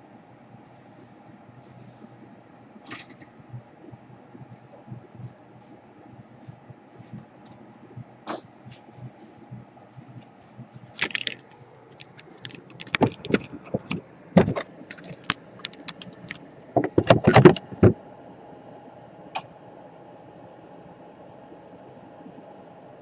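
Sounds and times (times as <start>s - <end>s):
faint steady hum: 0.0s - 23.0s
small tools clicking and clattering: 10.9s - 16.4s.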